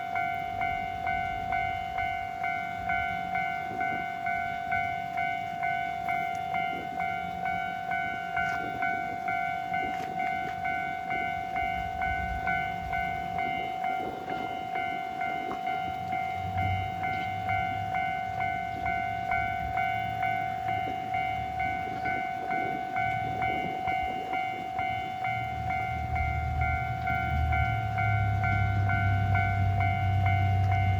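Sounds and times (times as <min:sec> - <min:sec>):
level crossing alarm ringing: 0:00.0 - 0:30.9.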